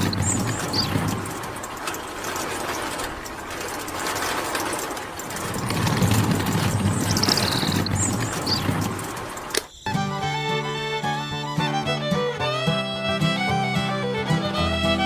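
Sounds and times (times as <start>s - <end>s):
tractor engine clattering: 0.0s - 15.0s.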